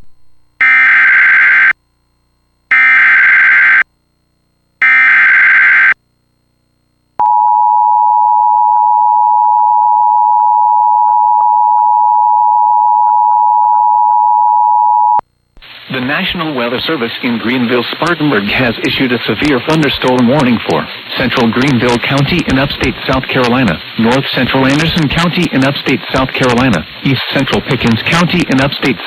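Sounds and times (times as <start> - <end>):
steady attention tone: 18.1 - 29.0.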